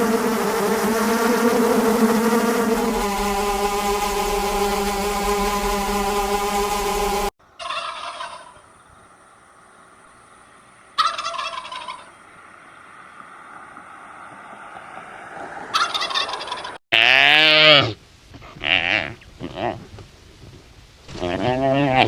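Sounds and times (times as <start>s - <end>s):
steady buzzing: 0.0s - 7.3s
farm bird gurgling calls: 7.5s - 8.8s, 11.0s - 12.2s, 15.7s - 16.8s
drawn-out animal call: 11.0s - 17.8s.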